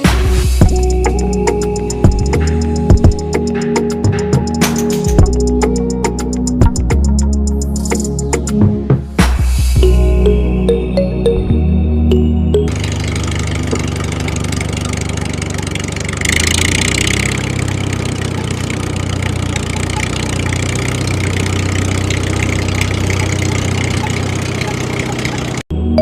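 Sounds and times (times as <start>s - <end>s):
engine idling: 12.6s - 25.6s.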